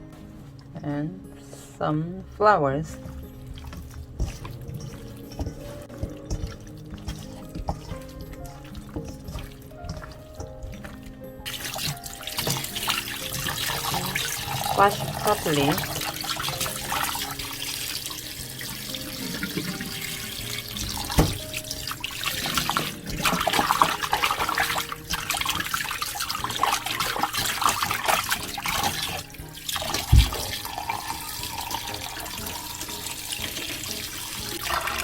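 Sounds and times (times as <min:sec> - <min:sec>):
chicken rubbed and rinsed: 0:01.4 - 0:35.0
tap water running into sink: 0:03.0 - 0:35.0.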